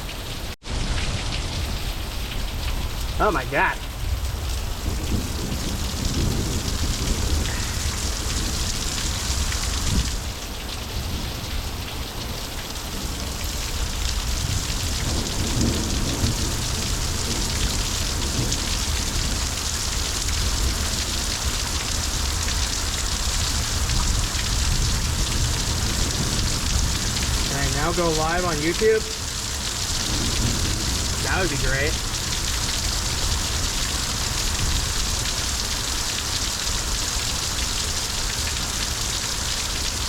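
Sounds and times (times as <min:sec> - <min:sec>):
heavy rain pouring: 0:00.0 - 0:40.0
low rumble of thunder: 0:03.9 - 0:10.3, 0:13.0 - 0:21.6, 0:23.4 - 0:27.5, 0:29.1 - 0:31.3.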